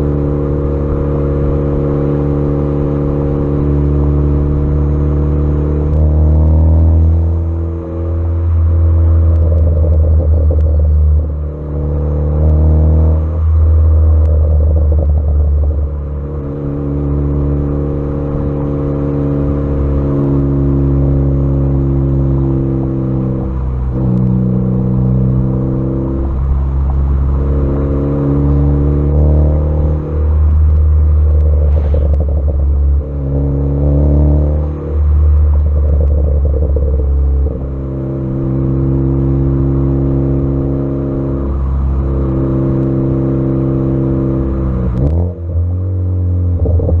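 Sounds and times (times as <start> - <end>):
car exhaust revving: 0.0 - 47.0
exhaust crackles and pops: 9.2 - 11.4, 13.9 - 16.6, 23.9 - 24.8, 29.1 - 33.5, 34.6 - 37.8.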